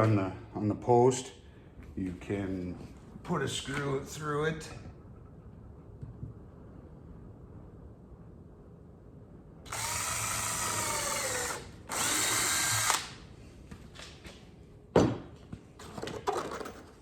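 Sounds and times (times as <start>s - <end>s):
power drill driving screws: 9.7s - 13.2s.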